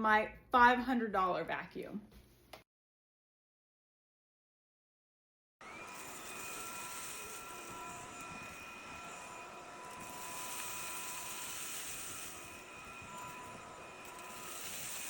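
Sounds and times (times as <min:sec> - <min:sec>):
stick vacuum running: 0:05.6 - 0:15.0.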